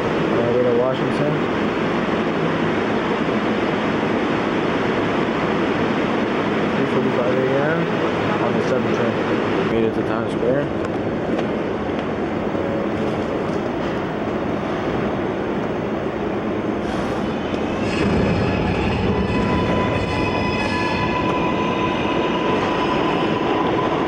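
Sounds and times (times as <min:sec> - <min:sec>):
subway train wheels rumbling: 0:00.0 - 0:24.0
high squealing tones: 0:17.4 - 0:24.0.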